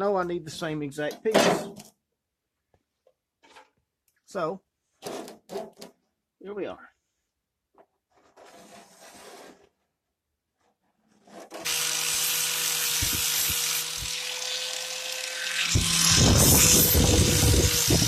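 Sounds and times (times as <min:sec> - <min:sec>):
tool cutting sheet steel rattling: 0:11.3 - 0:18.0
power tool whining: 0:11.6 - 0:18.0.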